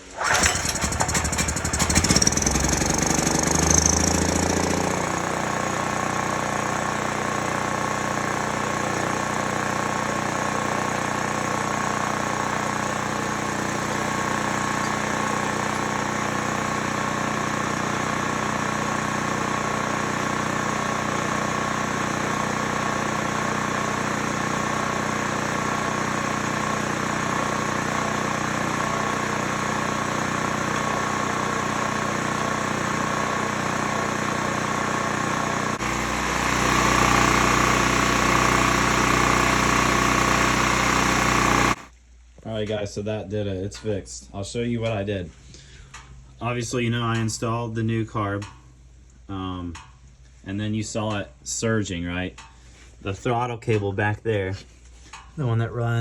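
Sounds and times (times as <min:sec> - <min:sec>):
generator engine running: 0:00.0 - 0:41.9.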